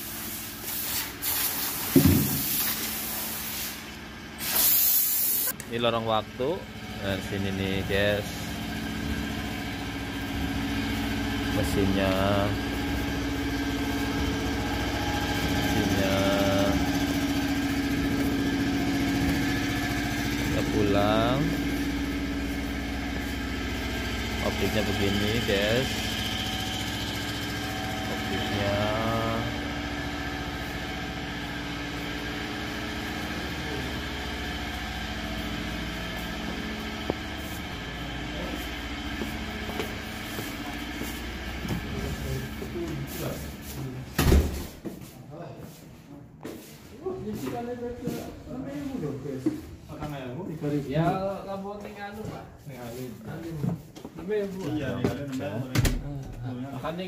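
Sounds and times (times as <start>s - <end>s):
paper machine droning: 5.9s - 44.1s.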